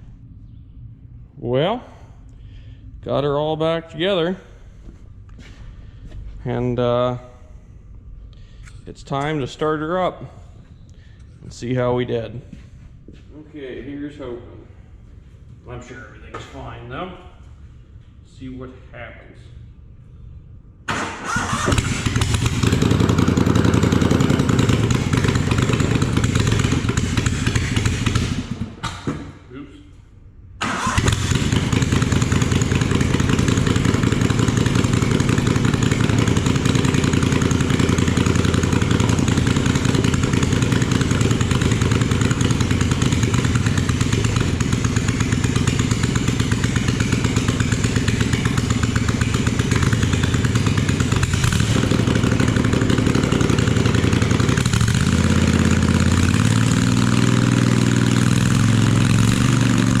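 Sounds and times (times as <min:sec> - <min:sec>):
small engine running: 0:30.8 - 1:00.0.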